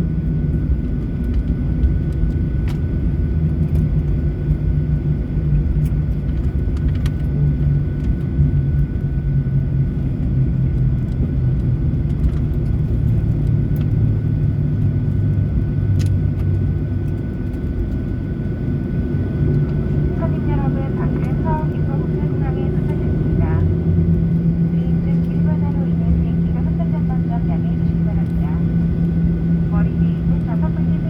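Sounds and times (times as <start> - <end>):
airliner engines rumbling: 0.0 - 31.0.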